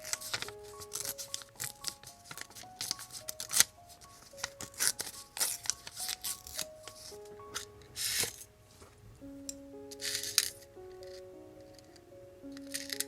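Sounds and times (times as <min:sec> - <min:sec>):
scissors snipping paper: 0:00.0 - 0:08.4
paper rustling: 0:00.0 - 0:09.0
quiet background music: 0:00.0 - 0:13.0.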